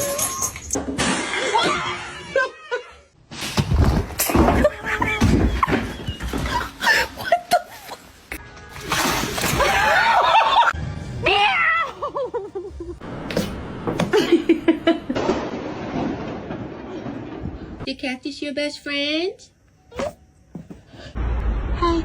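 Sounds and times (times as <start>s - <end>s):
music: 8.4s - 9.9s, 10.8s - 11.8s.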